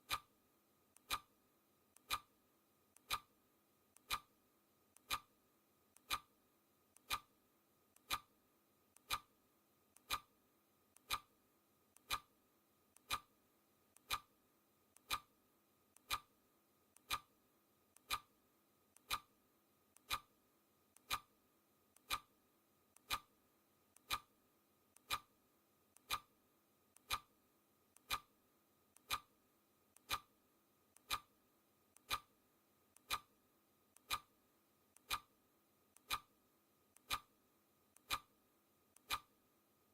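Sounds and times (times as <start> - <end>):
clock ticking: 0.0 - 0.3, 0.9 - 1.3, 1.9 - 2.3, 2.9 - 3.3, 3.9 - 4.3, 4.9 - 5.3, 5.9 - 6.3, 6.9 - 7.3, 7.9 - 8.3, 8.9 - 9.3, 9.9 - 10.3, 10.9 - 11.3, 11.9 - 12.3, 12.9 - 13.3, 13.9 - 14.3, 14.9 - 15.3, 15.9 - 16.3, 16.9 - 18.3, 18.9 - 21.3, 22.0 - 22.3, 22.9 - 23.3, 23.9 - 24.3, 24.9 - 25.3, 26.0 - 26.3, 27.0 - 27.3, 28.0 - 28.3, 28.9 - 29.3, 30.0 - 30.3, 31.0 - 32.3, 32.9 - 33.4, 34.0 - 34.4, 35.0 - 35.4, 36.0 - 36.4, 37.0 - 37.3, 38.0 - 38.4, 39.0 - 39.4.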